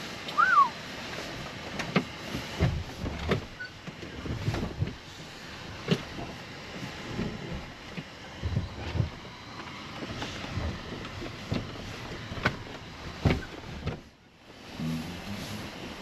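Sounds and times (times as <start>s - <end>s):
vehicle low rumble: 0.0s - 16.0s
sharp knocks of vehicle jolting: 1.8s - 5.0s.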